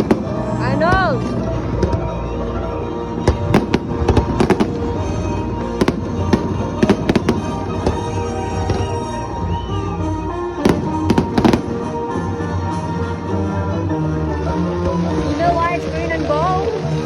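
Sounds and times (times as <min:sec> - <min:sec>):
fireworks bangs and crackles: 0:00.0 - 0:02.5, 0:03.2 - 0:12.3
background music: 0:00.0 - 0:17.0.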